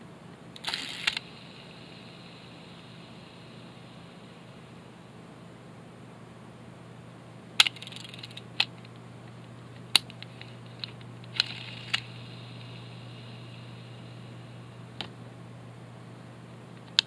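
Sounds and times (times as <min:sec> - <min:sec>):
steady low hum: 0:00.0 - 0:17.0
metal parts clicking on hard surface: 0:07.6 - 0:08.4.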